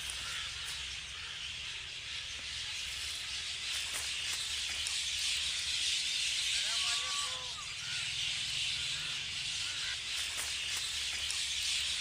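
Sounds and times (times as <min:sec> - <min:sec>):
faint short bird calls: 0:00.0 - 0:02.7, 0:06.5 - 0:12.0
outdoor ambience hiss: 0:00.0 - 0:12.0.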